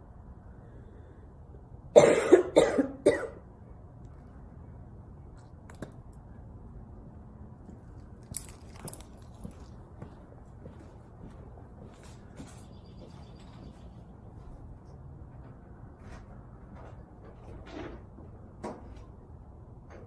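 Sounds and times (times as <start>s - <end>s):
woman coughing: 2.0s - 3.4s.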